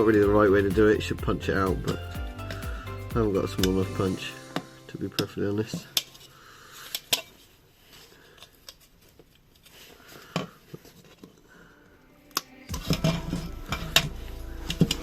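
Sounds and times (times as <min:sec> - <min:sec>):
low steady hum: 0:11.6 - 0:15.0.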